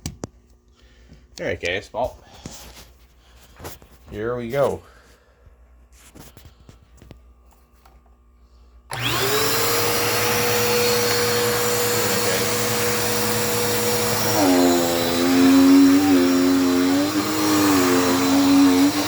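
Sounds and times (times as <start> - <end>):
vacuum cleaner running: 8.9 - 19.0.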